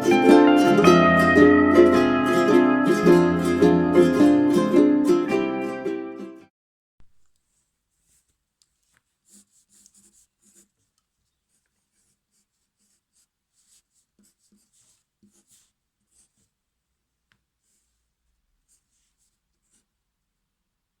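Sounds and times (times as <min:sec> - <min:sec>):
pen scratching on paper: 0:07.5 - 0:16.6.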